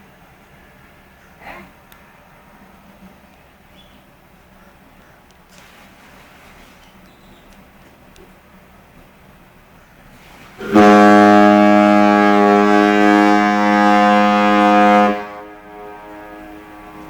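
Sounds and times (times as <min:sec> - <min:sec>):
ship's horn blast: 0:10.6 - 0:17.0.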